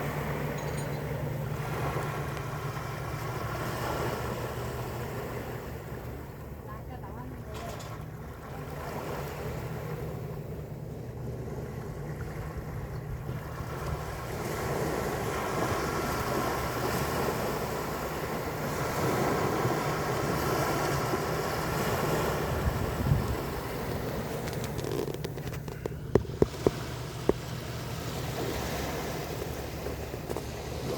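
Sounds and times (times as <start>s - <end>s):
sea waves washing: 0.0s - 30.9s
wind buffeting microphone: 10.9s - 30.9s.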